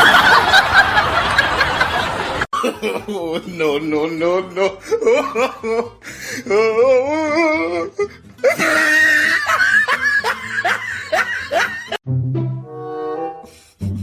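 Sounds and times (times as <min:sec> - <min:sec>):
person laughing hard: 0:00.0 - 0:12.0.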